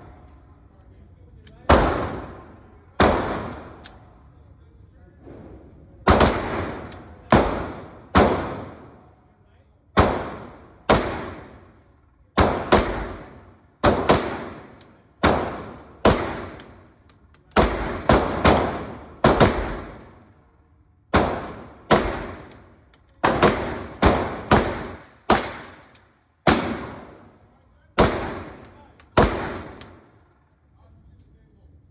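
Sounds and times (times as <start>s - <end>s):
pistol shots with ringing echo: 1.6s - 4.1s, 6.1s - 9.1s, 10.0s - 20.4s, 21.1s - 30.5s.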